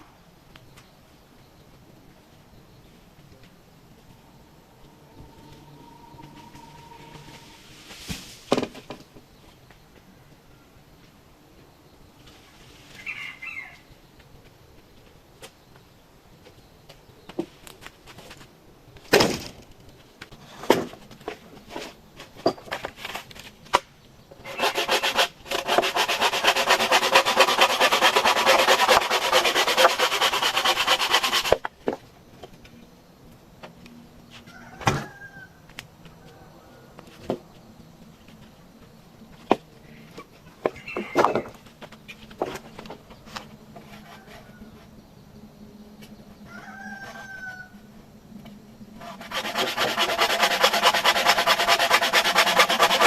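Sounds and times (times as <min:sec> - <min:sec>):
rhythmic rasping through bamboo: 0:24.4 - 0:31.7, 0:49.0 - 0:53.0.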